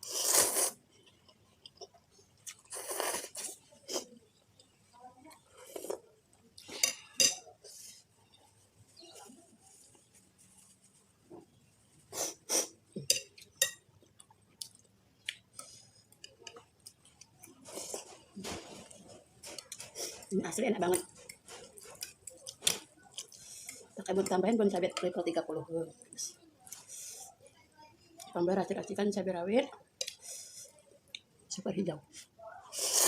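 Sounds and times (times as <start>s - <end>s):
slurping: 0.0s - 4.2s, 32.7s - 33.0s
chewing: 0.0s - 7.2s, 13.0s - 20.3s, 21.0s - 24.3s
cutlery clinking on a bowl: 6.6s - 7.6s, 13.0s - 13.9s.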